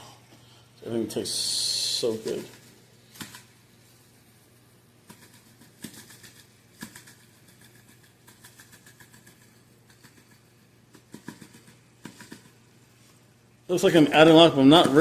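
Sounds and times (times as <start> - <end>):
seasoning shaker rattling: 5.0 - 12.6.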